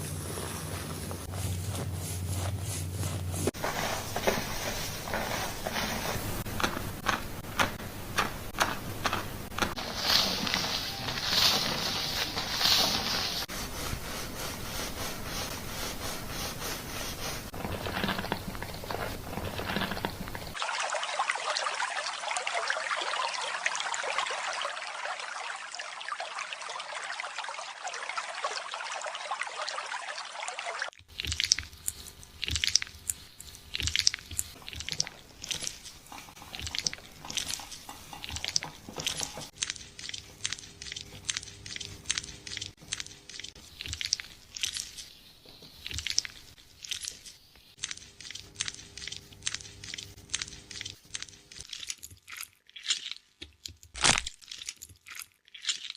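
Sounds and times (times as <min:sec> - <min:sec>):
fingers scratching through hair: 0:00.0 - 0:20.6, 0:31.2 - 0:51.9
wet lathered hair crackling: 0:00.0 - 0:21.6, 0:30.9 - 0:55.9
water rinsing hair: 0:00.3 - 0:53.6.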